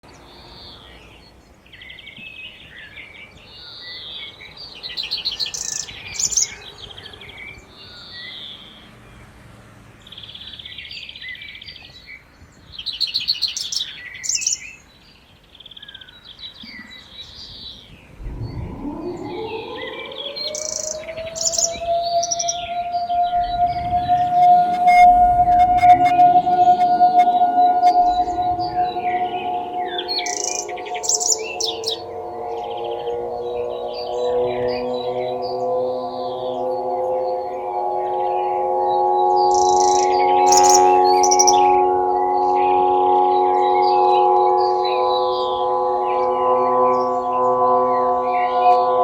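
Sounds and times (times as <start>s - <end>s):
birds chirping and trilling: 0.0s - 9.2s, 10.0s - 49.0s
civil defense siren winding up: 18.2s - 49.0s.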